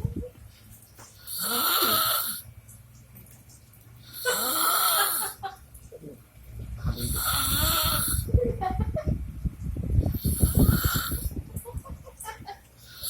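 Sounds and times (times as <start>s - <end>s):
person snoring with shrill note: 1.3s - 2.4s, 4.2s - 5.2s, 7.0s - 8.3s, 10.2s - 11.2s.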